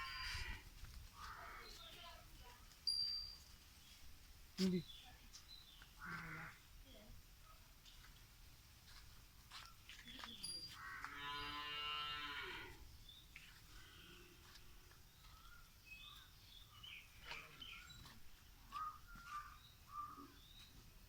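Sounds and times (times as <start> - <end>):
cow mooing: 10.8 - 12.8
faint bird chirps: 15.1 - 20.9.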